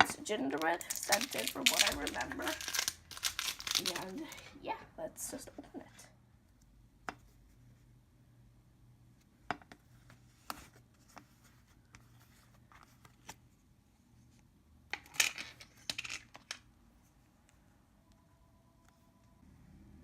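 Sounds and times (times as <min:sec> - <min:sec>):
plastic crackling and tearing: 0:00.4 - 0:04.4.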